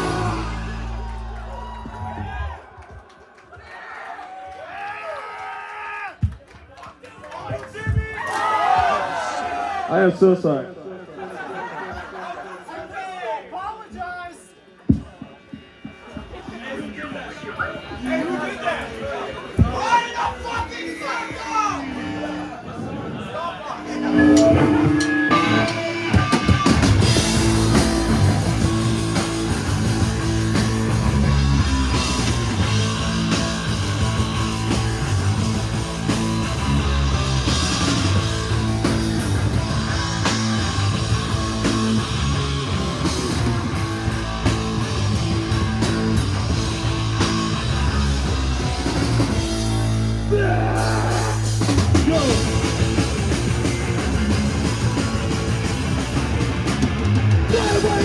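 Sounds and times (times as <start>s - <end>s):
live punk rock band: 0.0s - 2.5s, 23.9s - 58.0s
guitar sliding upward: 21.7s - 29.4s.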